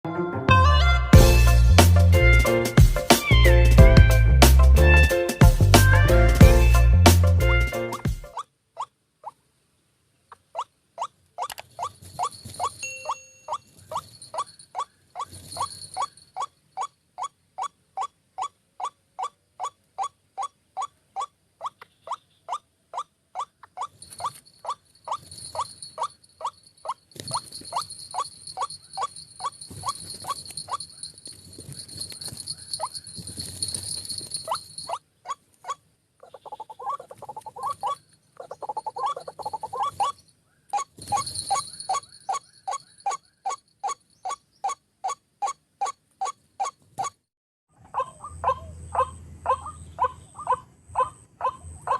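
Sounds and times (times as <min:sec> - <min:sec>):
waterhen calling: 0:34.4 - 0:47.2.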